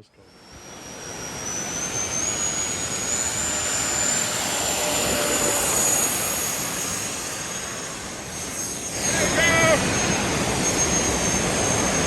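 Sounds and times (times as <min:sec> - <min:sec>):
model airplane motor whining: 0:00.3 - 0:12.0
rush of air noise: 0:00.5 - 0:12.0.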